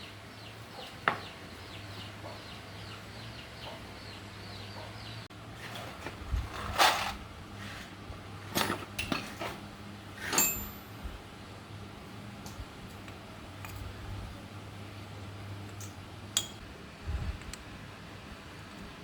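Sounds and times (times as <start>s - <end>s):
steady low hum: 0.0s - 19.0s
metal tools clinking: 8.4s - 9.6s, 10.2s - 11.0s.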